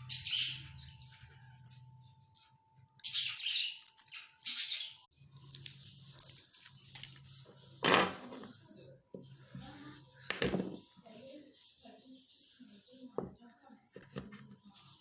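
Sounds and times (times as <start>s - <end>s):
small hard objects clinking: 5.4s - 7.2s.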